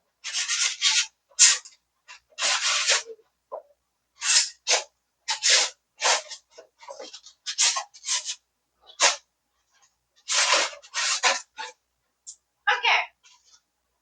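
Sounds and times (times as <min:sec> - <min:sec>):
styrofoam board scraping: 0:00.2 - 0:03.1, 0:04.2 - 0:11.8.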